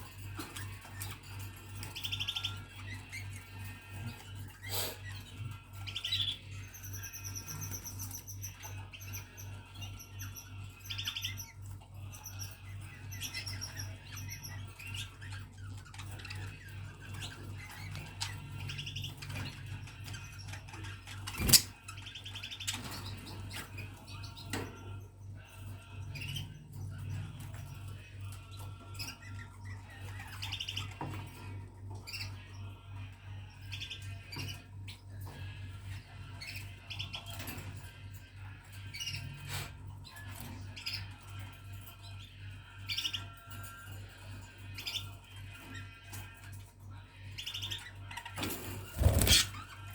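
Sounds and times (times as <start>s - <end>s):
budgerigars chirping: 13.2s - 23.9s, 48.9s - 49.9s.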